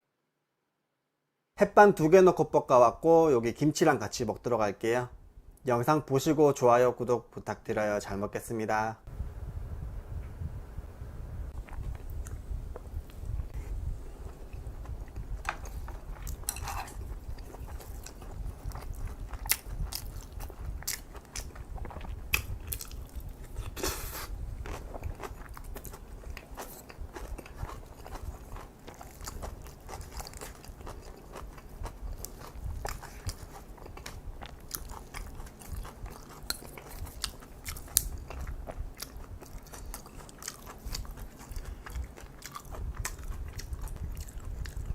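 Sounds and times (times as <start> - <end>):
wet chewing: 11.6 - 44.9
food crunching: 14.2 - 44.9.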